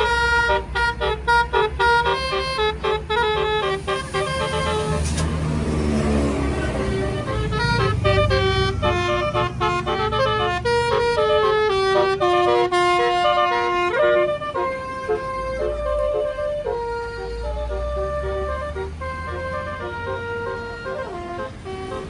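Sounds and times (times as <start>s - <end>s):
bus engine rumble: 0.0s - 22.0s
bus melody horn: 0.0s - 22.0s
short hiss: 3.6s - 5.5s.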